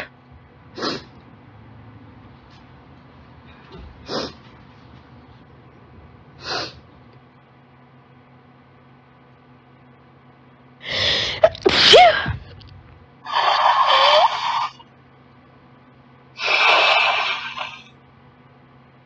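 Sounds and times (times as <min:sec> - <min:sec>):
sharp intake of breath: 0:06.4 - 0:06.8
woman sneezing: 0:11.3 - 0:12.4.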